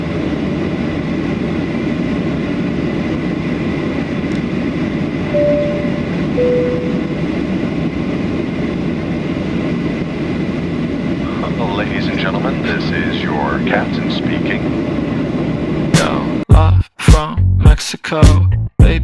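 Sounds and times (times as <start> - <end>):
airliner cabin rumble: 0.0 - 16.5
two-note falling chime: 5.4 - 7.2.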